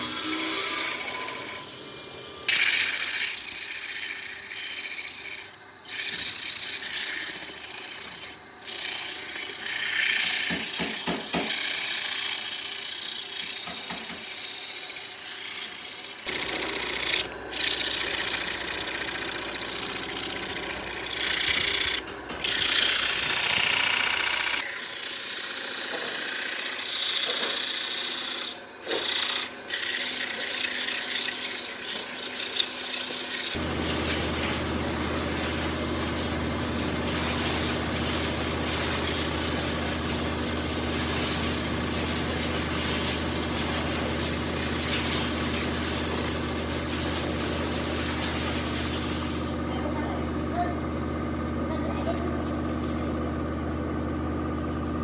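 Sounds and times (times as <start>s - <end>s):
sanding wood: 32.9s - 49.7s.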